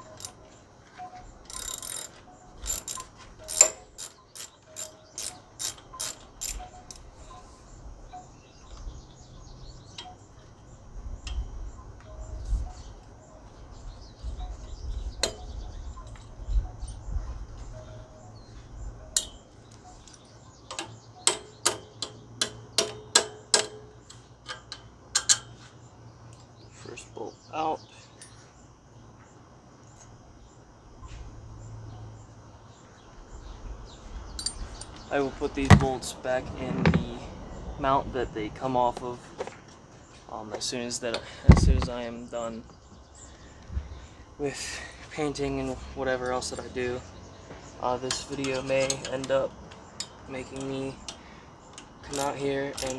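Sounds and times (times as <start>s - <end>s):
insects chirping: 0.0s - 52.9s
socket ratchet clicking: 1.5s - 7.1s, 20.1s - 25.6s, 48.1s - 52.9s.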